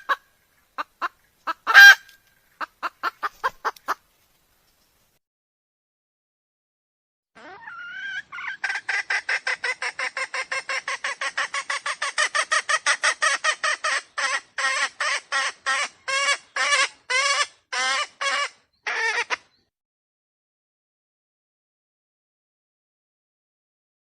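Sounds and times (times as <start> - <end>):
wild chicken calling: 0.0 - 4.0, 7.4 - 19.7.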